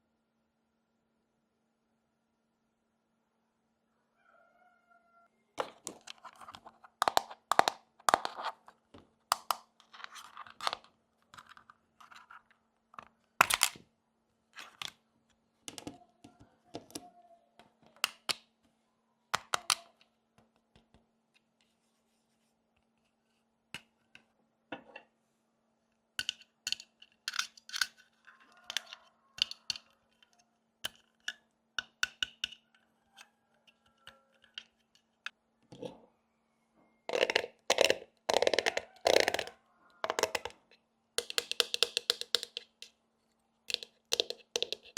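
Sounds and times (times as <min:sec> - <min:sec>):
toy pieces clicking and tapping: 0:05.6 - 0:08.6, 0:09.3 - 0:12.4, 0:19.4 - 0:19.9, 0:26.2 - 0:28.1, 0:28.7 - 0:32.7, 0:37.1 - 0:42.9, 0:43.7 - 0:44.9.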